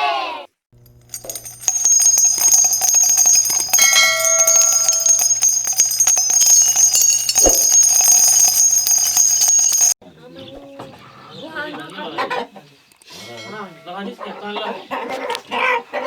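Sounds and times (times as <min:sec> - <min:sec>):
bells jingling: 0:00.8 - 0:10.0.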